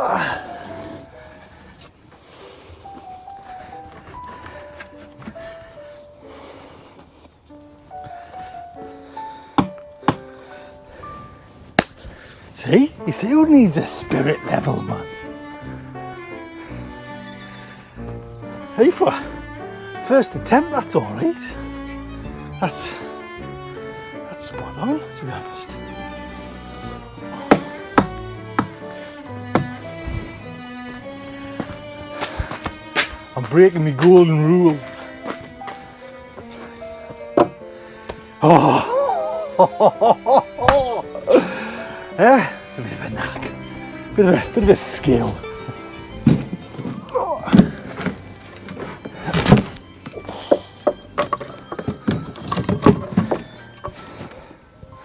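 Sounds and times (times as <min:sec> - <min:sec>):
bowed strings music: 0:00.0 - 0:55.0
sharp knocks: 0:27.2 - 0:28.8, 0:29.4 - 0:30.4
knocks and thunks on wood: 0:27.2 - 0:30.5, 0:37.1 - 0:38.2, 0:44.4 - 0:54.3.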